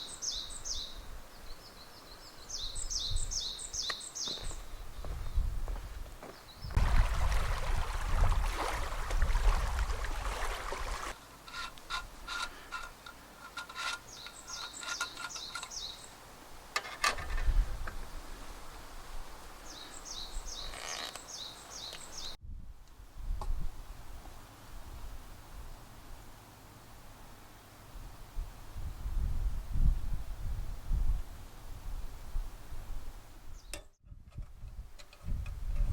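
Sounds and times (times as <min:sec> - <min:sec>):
bird chirping: 0:00.0 - 0:05.5, 0:14.0 - 0:16.2, 0:19.7 - 0:22.4
wind on microphone: 0:02.5 - 0:03.6, 0:04.4 - 0:11.2, 0:17.2 - 0:19.5, 0:22.2 - 0:24.2, 0:28.0 - 0:35.9.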